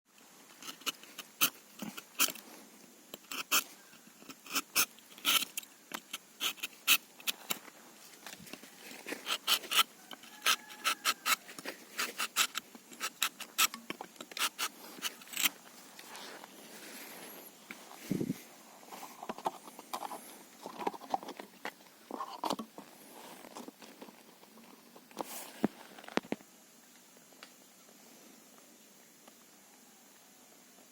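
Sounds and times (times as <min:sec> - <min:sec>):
knife scraping tree bark: 0:00.6 - 0:02.4, 0:03.2 - 0:07.6, 0:08.8 - 0:16.5.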